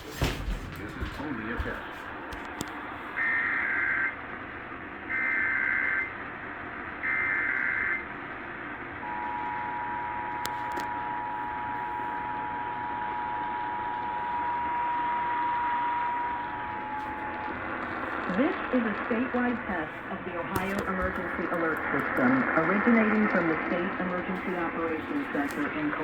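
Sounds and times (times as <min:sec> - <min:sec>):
radio reception hiss: 0:00.0 - 0:04.6, 0:10.3 - 0:26.0.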